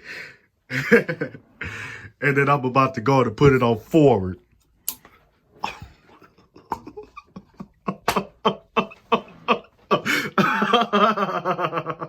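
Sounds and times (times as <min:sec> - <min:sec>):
man laughing: 0:00.7 - 0:01.4, 0:05.6 - 0:12.0.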